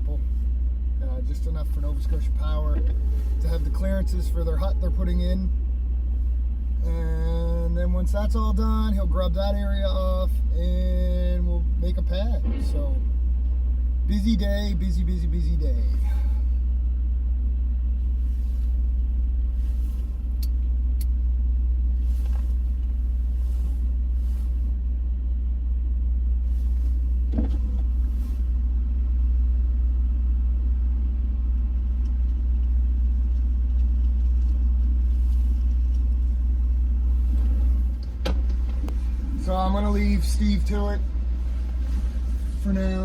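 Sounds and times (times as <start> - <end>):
engine running rumble: 0.0 - 43.0.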